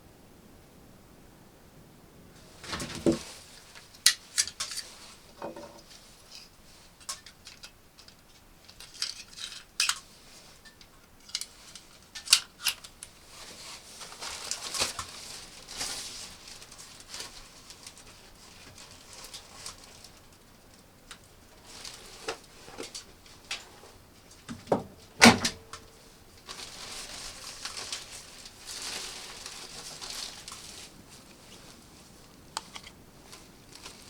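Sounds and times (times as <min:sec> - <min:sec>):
soft rustling: 0:02.2 - 0:07.0, 0:12.9 - 0:34.0.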